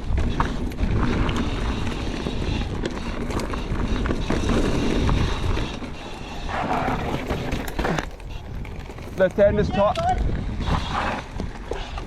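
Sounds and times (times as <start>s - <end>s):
bike tyres rumbling over dirt: 0.0s - 11.9s
wind buffeting microphone: 0.0s - 12.0s
knocks and rattles: 6.8s - 9.8s.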